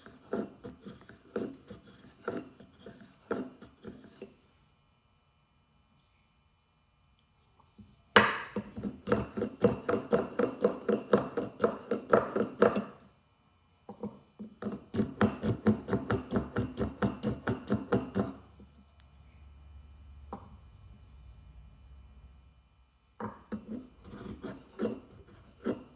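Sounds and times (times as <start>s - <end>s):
hand plane strokes on wood: 0.0s - 4.3s, 14.6s - 18.4s, 23.2s - 25.9s.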